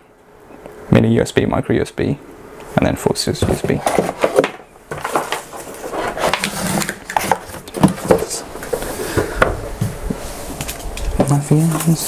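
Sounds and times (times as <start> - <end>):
cardboard and plastic rustling: 3.3 - 12.0.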